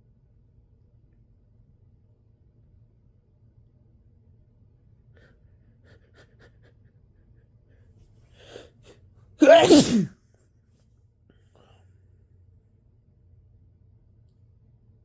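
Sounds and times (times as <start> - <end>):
person sneezing loudly: 9.4 - 10.1.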